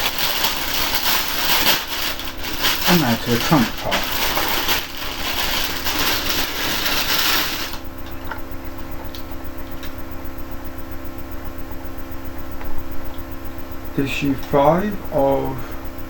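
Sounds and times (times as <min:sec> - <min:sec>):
packaging rustling: 0:00.0 - 0:07.8
steady low hum: 0:00.0 - 0:16.0.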